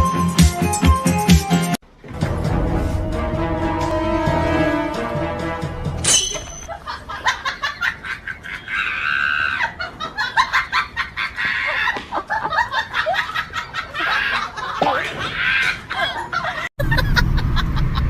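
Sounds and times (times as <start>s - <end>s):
music: 0.0s - 6.2s.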